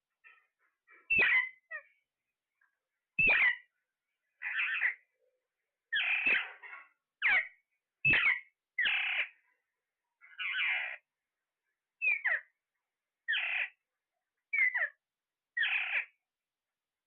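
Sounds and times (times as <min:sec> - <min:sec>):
parrot squawking: 0:01.1 - 0:01.9, 0:03.2 - 0:03.7, 0:04.4 - 0:05.0, 0:05.9 - 0:09.4, 0:10.3 - 0:11.0, 0:12.0 - 0:12.5, 0:13.3 - 0:13.8, 0:14.6 - 0:15.0, 0:15.6 - 0:16.2.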